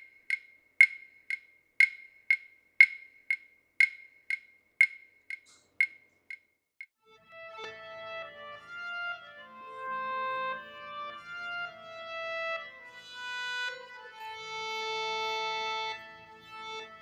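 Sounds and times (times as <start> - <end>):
slow instrumental melody: 7.1 - 17.0.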